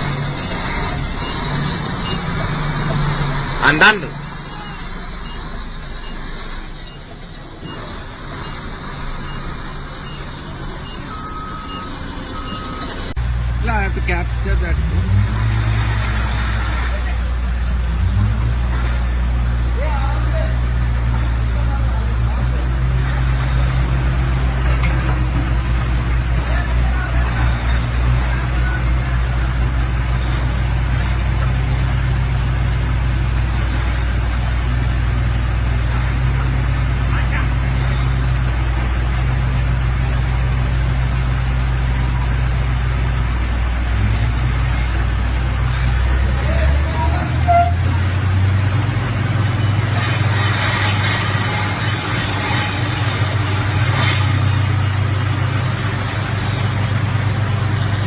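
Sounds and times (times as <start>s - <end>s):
heavy machine engine running: 0.0s - 58.0s
longer lower beep: 4.5s - 7.1s, 9.2s - 12.9s
short high beeps: 4.5s - 7.1s.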